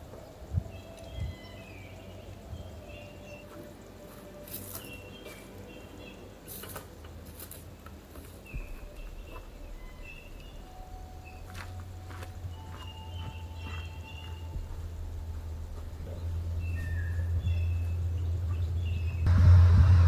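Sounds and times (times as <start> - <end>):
birds chirping: 0.0 - 20.0
steady low rumble: 7.8 - 20.0.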